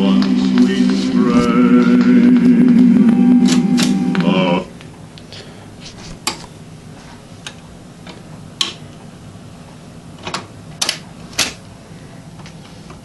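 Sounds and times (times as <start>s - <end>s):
amplifier hum: 0.0s - 5.2s.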